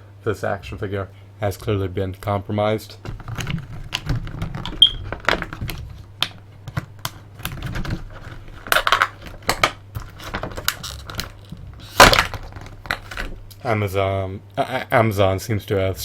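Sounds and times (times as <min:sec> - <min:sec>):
plastic clicks and crinkles: 0:03.0 - 0:13.6.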